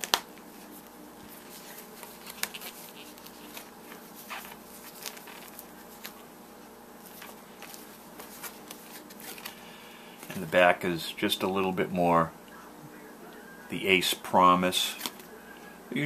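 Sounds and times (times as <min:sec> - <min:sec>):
leather gloves rustling: 0:00.0 - 0:06.3, 0:06.9 - 0:09.6
faint steady hum: 0:00.0 - 0:16.0.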